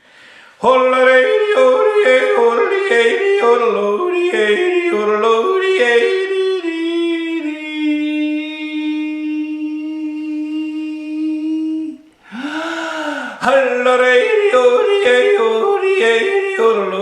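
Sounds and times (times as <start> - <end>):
man yodel singing: 0.6 - 17.0
breathy vocal swoop: 12.1 - 13.5.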